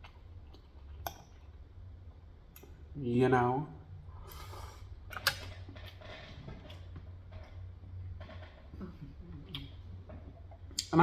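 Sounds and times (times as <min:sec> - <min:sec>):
chewing and wet mouth noises: 0:00.0 - 0:02.8, 0:08.7 - 0:11.0.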